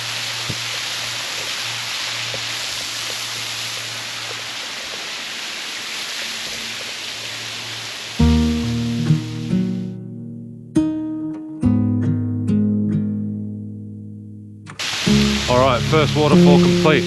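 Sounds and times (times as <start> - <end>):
waterfall splashing into creek: 0.0 - 9.9, 14.7 - 17.0.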